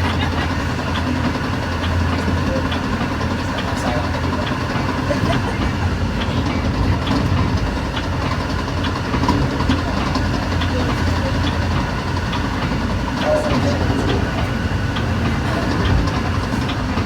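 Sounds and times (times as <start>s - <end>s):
faint ticks and rattles: 0.0s - 17.0s
train coach rumble and hum: 0.0s - 17.0s.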